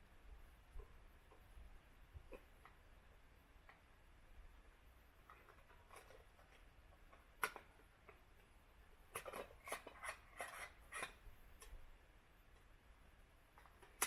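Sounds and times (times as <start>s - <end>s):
soft clicks and rustles: 3.6s - 12.7s, 13.5s - 14.0s.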